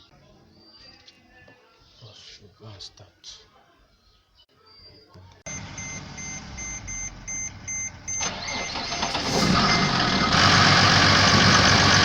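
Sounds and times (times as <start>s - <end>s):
repeating warning beep: 5.5s - 9.0s
diesel engine cranking and starting: 5.5s - 12.0s.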